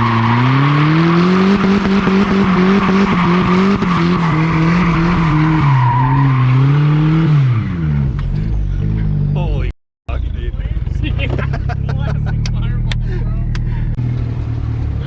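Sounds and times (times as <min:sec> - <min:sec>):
tyres squealing on pavement: 0:00.0 - 0:07.7
truck engine at high revs: 0:00.0 - 0:15.0.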